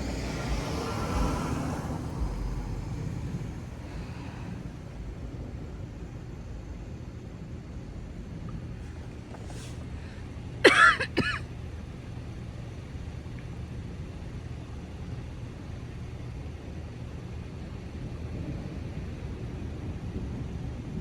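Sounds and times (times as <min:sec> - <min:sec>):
storm rushing noise: 0:00.0 - 0:06.1
person coughing: 0:10.6 - 0:11.4.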